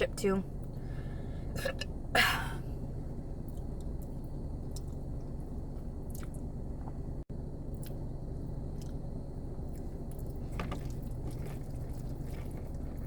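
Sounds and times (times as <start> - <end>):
chewing pasta: 3.4 - 7.0, 7.7 - 13.0.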